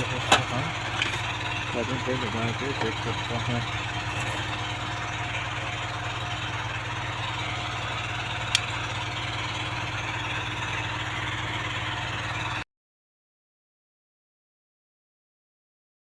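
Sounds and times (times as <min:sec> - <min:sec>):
machine hum with electrical drone: 0:00.0 - 0:12.6
sharp click: 0:08.5 - 0:08.7.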